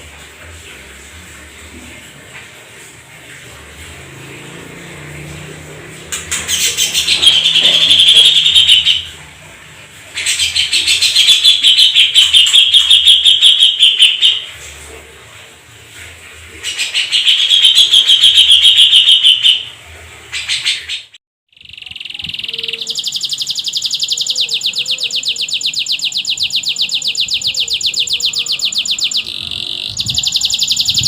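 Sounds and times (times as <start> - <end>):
canary trilling: 6.1 - 9.2, 10.1 - 14.5, 16.6 - 19.7, 20.3 - 31.0.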